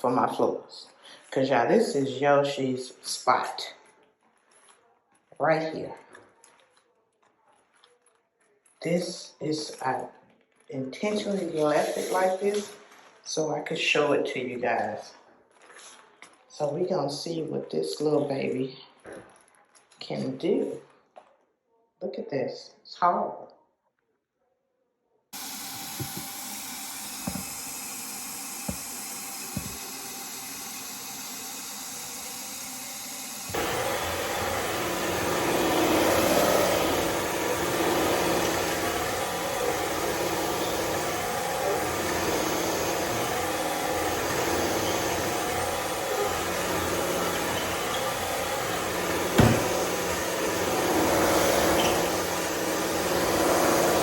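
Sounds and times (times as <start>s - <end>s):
floor vacuum motor hum: 11.0s - 13.1s, 25.4s - 54.0s
knock: 49.4s - 49.9s.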